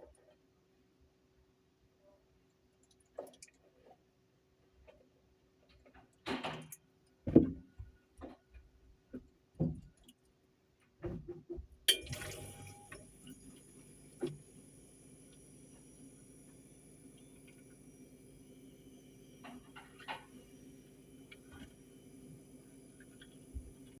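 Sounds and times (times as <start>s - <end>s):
knocks and clicks of objects: 5.9s - 10.0s.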